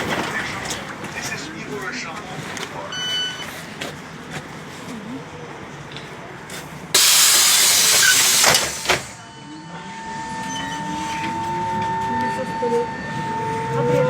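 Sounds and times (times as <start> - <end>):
clunk: 7.0 - 9.2
compressed air hiss: 7.0 - 9.2.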